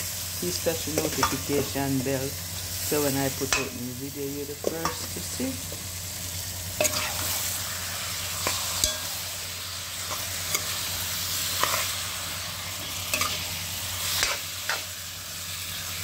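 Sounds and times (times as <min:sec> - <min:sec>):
chicken sizzling in pot: 0:00.0 - 0:16.0
spoon stirring and scraping pot: 0:06.8 - 0:07.4, 0:11.6 - 0:12.0.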